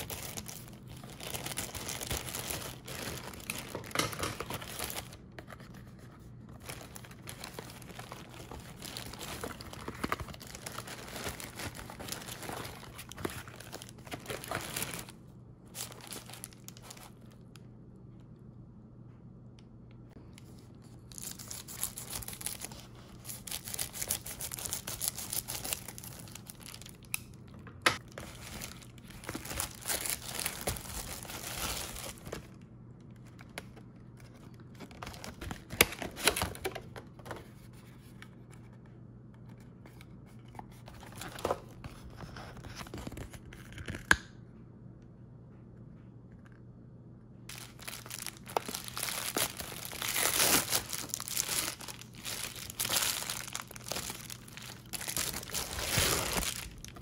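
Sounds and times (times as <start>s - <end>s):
packaging crumpling and tearing: 0.0s - 17.5s, 20.4s - 27.4s, 28.0s - 37.9s, 47.5s - 57.0s
low electrical hum: 0.0s - 57.0s.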